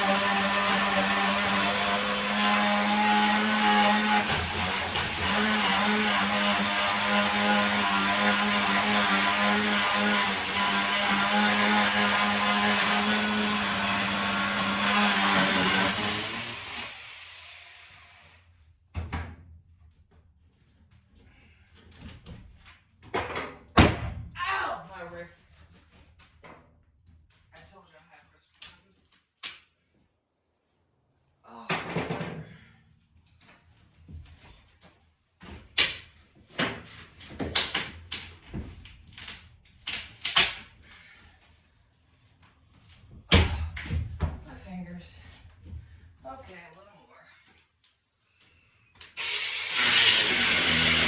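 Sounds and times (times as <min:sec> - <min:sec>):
sharp knocks and clatters: 0:21.8 - 0:24.3
mini chainsaw winding down: 0:49.2 - 0:51.0.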